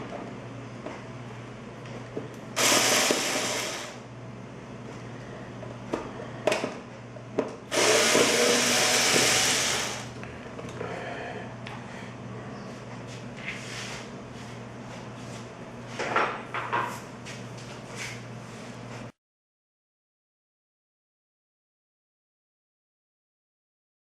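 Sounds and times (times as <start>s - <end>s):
power drill running: 2.6s - 4.0s, 7.7s - 10.2s.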